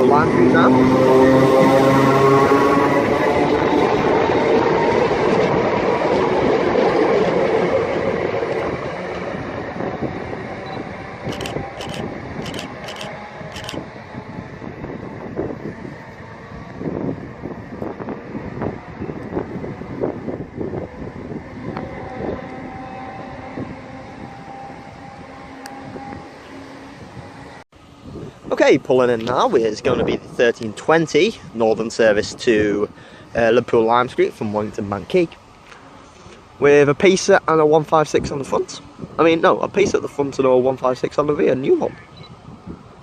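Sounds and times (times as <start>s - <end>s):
electric train pulling away: 0.0s - 28.0s.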